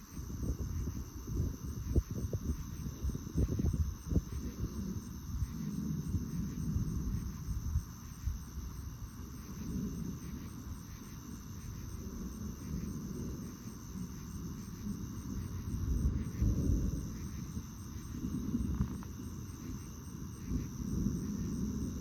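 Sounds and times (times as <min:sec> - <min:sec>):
insects chirring: 0:00.0 - 0:22.0.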